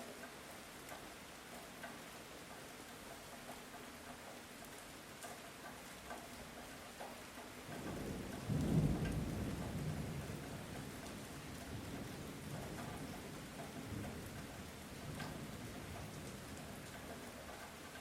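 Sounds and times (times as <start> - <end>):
light rain with drips: 0.0 - 18.0
distant thunder rolling: 7.8 - 14.4.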